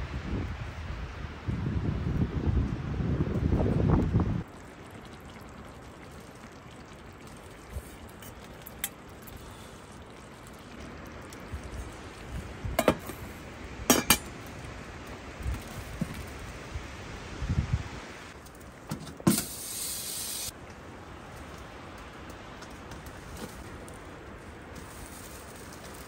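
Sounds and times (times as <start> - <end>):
low steady hiss: 3.8 - 26.0
camp cookware clinking: 8.0 - 9.5, 12.6 - 14.6.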